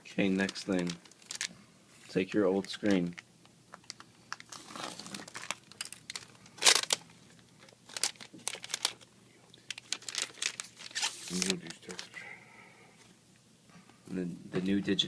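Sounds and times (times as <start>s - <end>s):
crinkling and tearing rustles: 0.3s - 12.2s.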